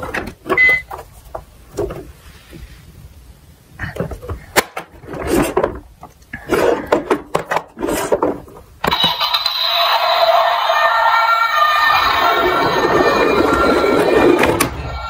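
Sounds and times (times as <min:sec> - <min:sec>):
toy cars clattering and scraping: 0:03.9 - 0:14.8
steady electronic tones: 0:08.9 - 0:15.0.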